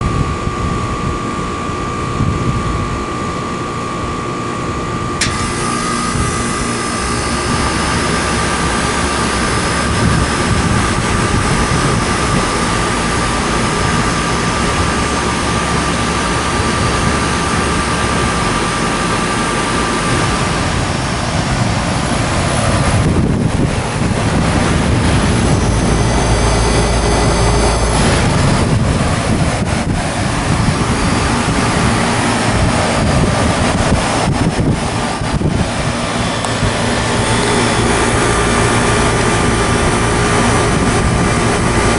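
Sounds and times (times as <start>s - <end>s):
heat pump whir and hum: 0.0s - 41.9s
sharp click: 5.2s - 5.6s.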